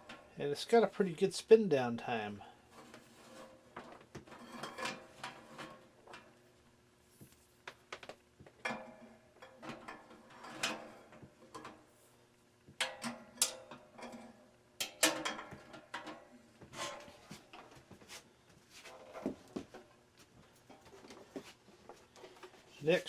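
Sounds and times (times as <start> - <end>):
hard objects clunking and knocking: 2.8 - 6.4, 12.7 - 18.1, 18.8 - 22.7.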